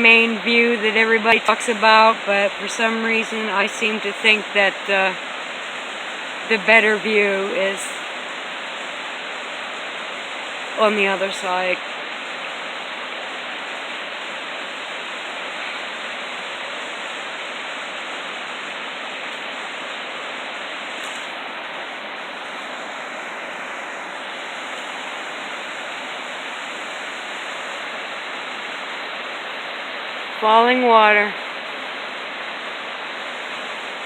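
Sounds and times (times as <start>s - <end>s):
waterfall rushing: 0.0s - 34.0s.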